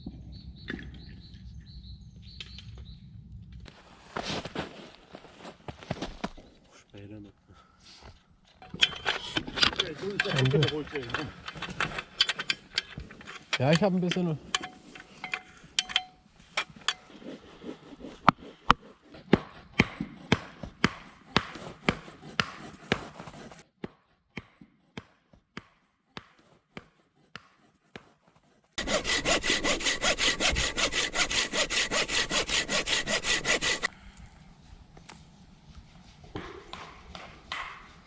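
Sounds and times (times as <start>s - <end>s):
saw cutting through wood: 16.5s - 23.6s, 26.7s - 33.9s.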